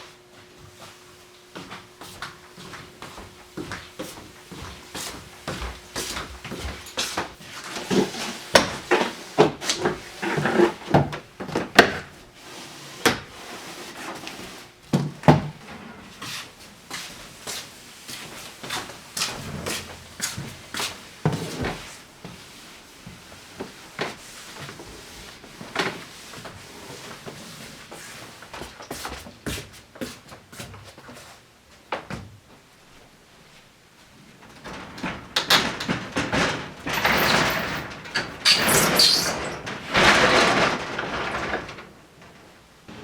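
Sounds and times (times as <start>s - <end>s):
objects knocking and clattering: 34.5s - 41.9s.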